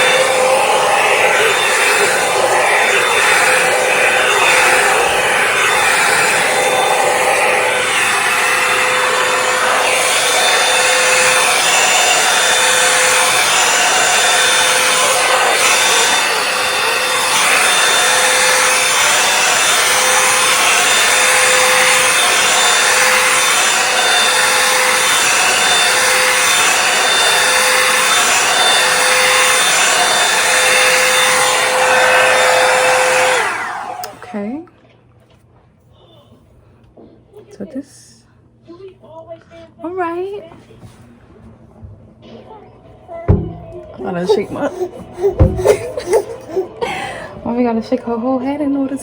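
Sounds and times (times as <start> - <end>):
hair dryer brush blowing: 0.0 - 34.4, 43.3 - 47.7
hair dryer switch off: 0.0 - 34.4, 43.3 - 47.7.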